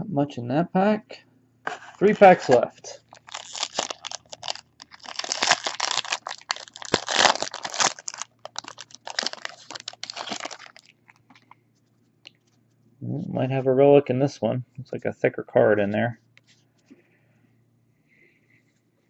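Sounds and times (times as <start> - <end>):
foil wrapper crinkling and tearing: 2.0 - 11.0.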